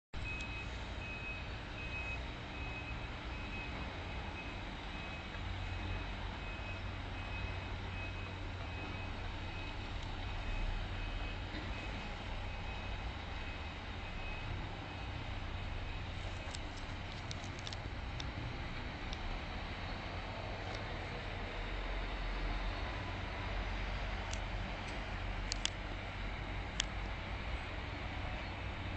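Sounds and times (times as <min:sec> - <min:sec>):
reversing alarm beeping: 0:00.2 - 0:16.6
diesel engine running: 0:00.2 - 0:28.9
sharp clicks: 0:24.2 - 0:25.8.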